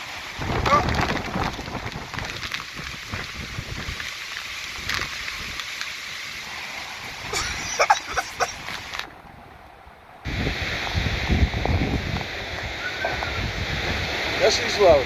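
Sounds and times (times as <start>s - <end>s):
strong wind: 0.0s - 5.6s, 6.5s - 15.0s
wind buffeting the microphone: 0.0s - 5.6s, 8.6s - 15.0s
driving rain: 0.0s - 15.0s
high pitch-bending cries: 7.3s - 8.6s.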